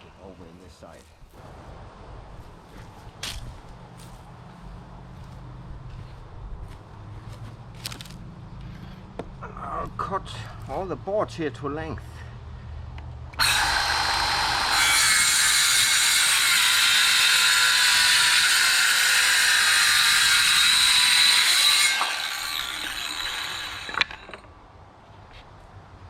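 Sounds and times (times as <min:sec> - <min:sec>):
power saw cutting wood: 0:13.4 - 0:24.5.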